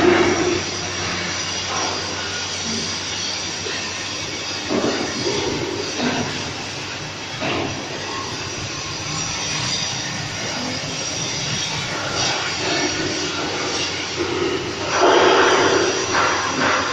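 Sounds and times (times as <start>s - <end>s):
welding machine running: 0.0s - 16.9s.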